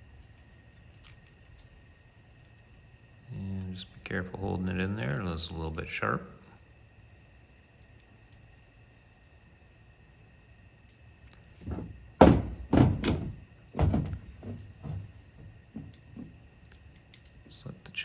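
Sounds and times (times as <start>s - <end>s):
saw chain knocks and clunks: 11.6s - 16.4s.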